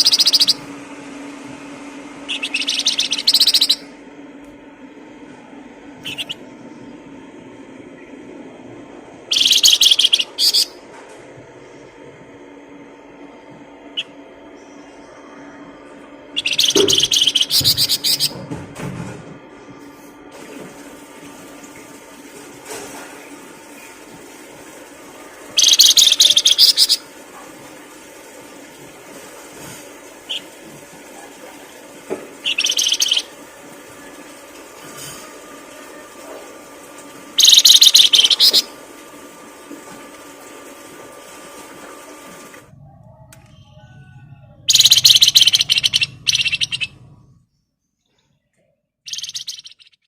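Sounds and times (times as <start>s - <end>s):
songbird chattering: 0.0s - 0.6s, 2.3s - 3.9s, 6.0s - 6.4s, 9.3s - 10.7s, 16.4s - 18.3s, 25.6s - 27.0s, 32.4s - 33.3s, 37.4s - 38.7s, 44.7s - 46.9s, 49.1s - 50.0s.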